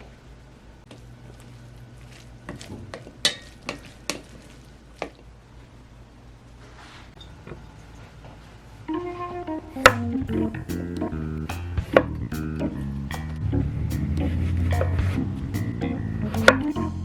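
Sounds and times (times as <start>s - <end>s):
steady low hum: 0.0s - 17.0s
utensils clinking against cookware: 3.2s - 4.2s.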